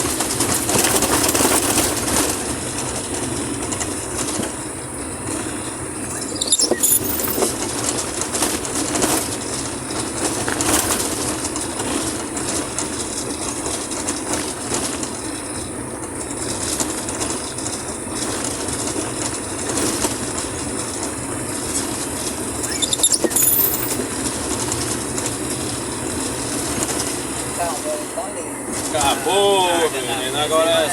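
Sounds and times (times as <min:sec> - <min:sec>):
vehicle driving on rough dirt road: 0:00.0 - 0:30.9
high squeak: 0:06.1 - 0:07.5, 0:22.6 - 0:24.0.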